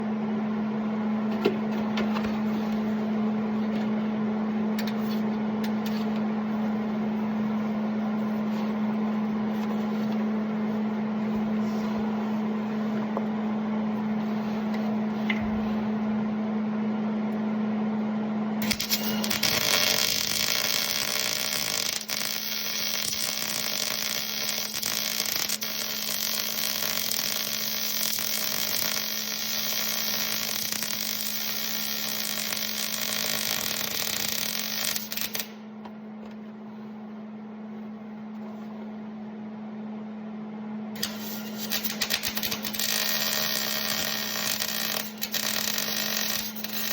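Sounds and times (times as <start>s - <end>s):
welding equipment humming: 0.6s - 16.4s, 18.6s - 36.9s, 41.0s - 46.9s
welding arc crackling hiss: 18.6s - 35.6s, 41.0s - 46.9s.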